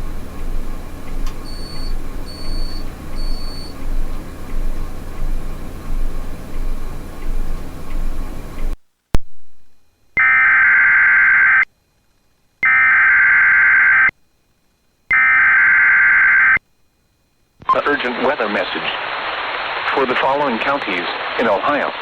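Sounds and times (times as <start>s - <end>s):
screechy digital data bursts: 1.4s - 3.8s
steady hiss: 17.7s - 22.0s.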